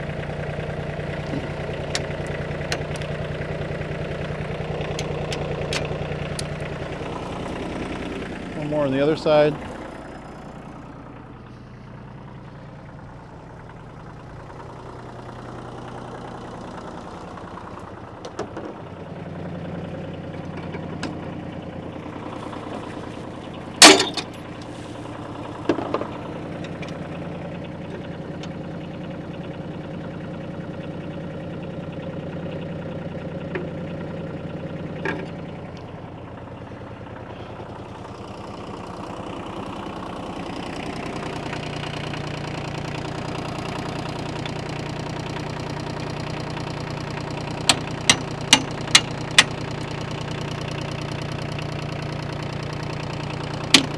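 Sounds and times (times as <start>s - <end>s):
tractor engine idling: 0.0s - 53.9s
sharp metal knocks: 23.8s - 24.4s, 47.7s - 49.5s.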